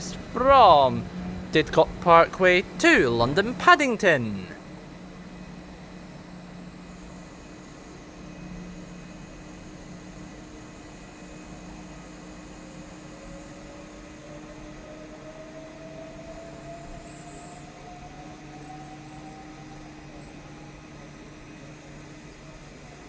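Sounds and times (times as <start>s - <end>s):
station background noise: 0.0s - 4.6s.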